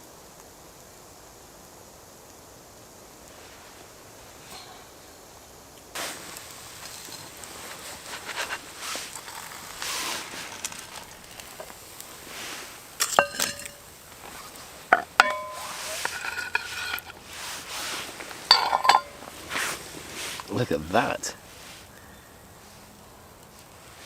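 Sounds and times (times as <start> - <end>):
food sizzling: 2.1 - 24.0
metal utensil scraping frying pan: 6.8 - 19.3.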